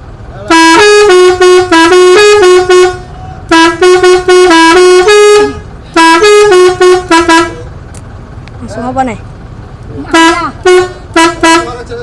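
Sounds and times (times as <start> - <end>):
multi-tone horn hooting tunes: 0.4 - 7.8, 10.1 - 12.0.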